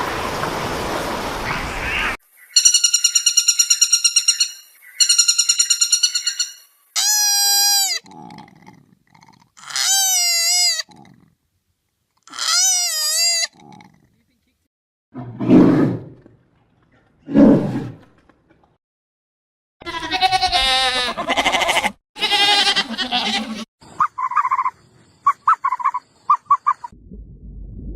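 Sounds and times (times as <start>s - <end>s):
wavering bleating call: 7.0s - 8.1s, 19.8s - 23.7s
animal calls: 21.0s - 26.9s.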